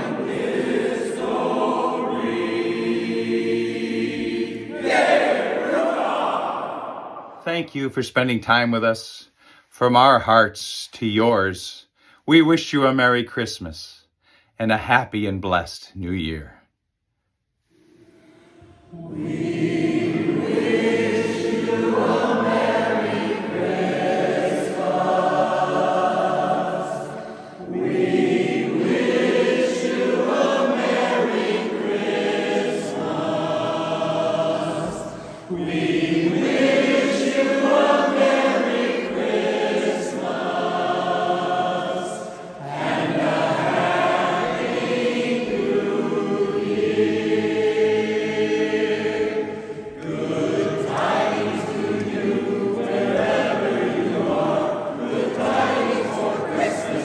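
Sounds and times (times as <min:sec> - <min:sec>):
chorus singing close harmony: 0:00.0 - 0:07.8, 0:18.2 - 0:57.0
singers breathing: 0:09.3 - 0:09.7, 0:11.9 - 0:12.3, 0:14.2 - 0:14.6, 0:17.6 - 0:18.8, 0:27.1 - 0:27.7, 0:35.0 - 0:35.6.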